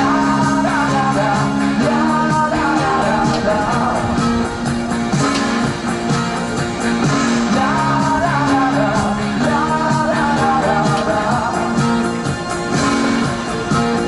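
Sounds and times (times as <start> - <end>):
person singing: 0.0 - 5.4, 7.1 - 14.0
rock guitar and beat: 0.0 - 14.0.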